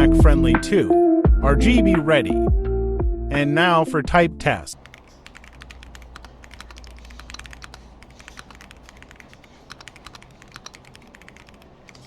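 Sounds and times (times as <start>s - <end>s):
mechanical keyboard key clacks: 4.8s - 12.0s.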